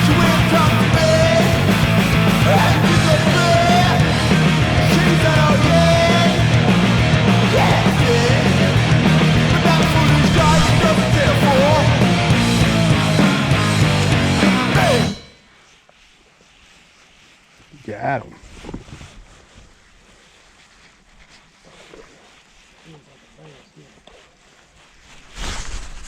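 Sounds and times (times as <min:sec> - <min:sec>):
loud rock music with singing: 0:00.0 - 0:15.4
faint background hiss: 0:15.2 - 0:26.0.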